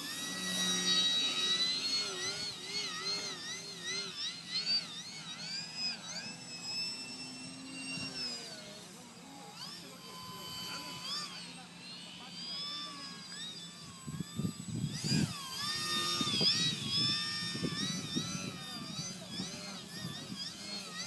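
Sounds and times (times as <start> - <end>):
model airplane motor whining: 0.0 - 21.0.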